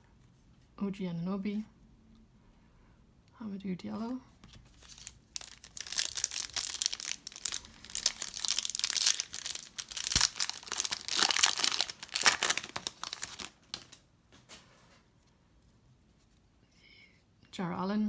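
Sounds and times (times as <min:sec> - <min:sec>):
plastic wrapper crinkling and tearing: 0:04.4 - 0:14.0.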